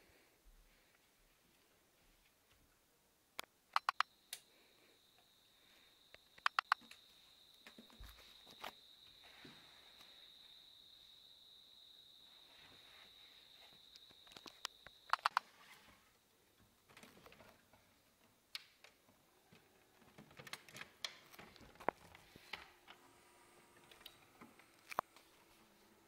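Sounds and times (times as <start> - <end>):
faint clicks and taps: 6.1 - 8.8.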